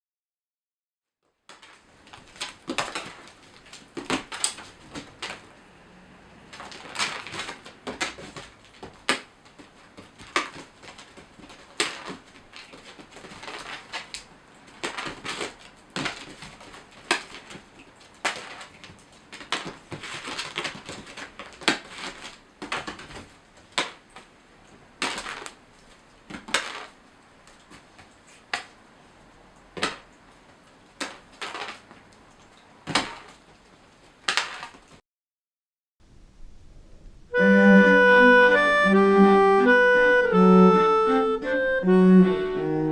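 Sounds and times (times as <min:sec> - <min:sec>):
cat paws scrabbling on hard floor: 0:01.5 - 0:05.6, 0:06.3 - 0:35.0.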